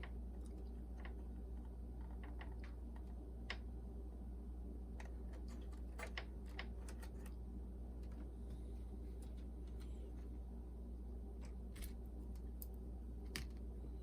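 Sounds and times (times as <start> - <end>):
low hum: 0.0 - 14.0
clicks of plastic parts handled: 11.4 - 13.6.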